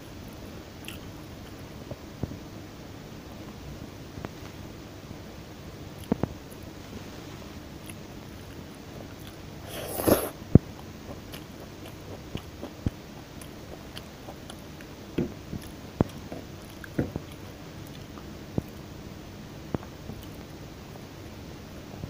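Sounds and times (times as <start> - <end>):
soft mouth clicks and smacks: 0.8 - 1.6
crunchy bite: 9.2 - 10.4
person biting and chewing: 9.2 - 10.4.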